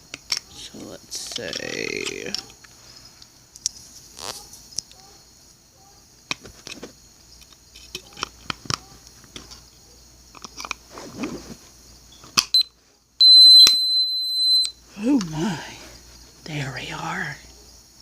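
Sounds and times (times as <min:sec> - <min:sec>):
plastic clicks and rattles: 0:10.3 - 0:10.8.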